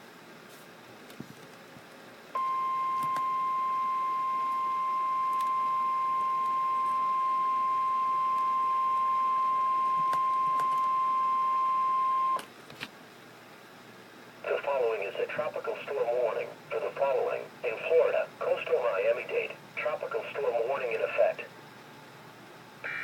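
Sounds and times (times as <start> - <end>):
steady emergency alert beep: 2.4 - 12.4.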